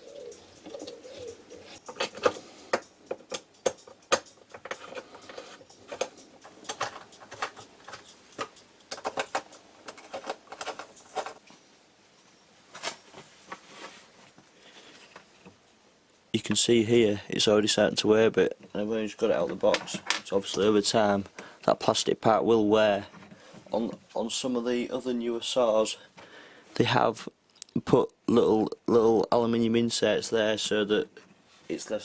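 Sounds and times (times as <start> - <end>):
saw parts clicking and knocking: 1.6 - 11.5, 18.6 - 20.7.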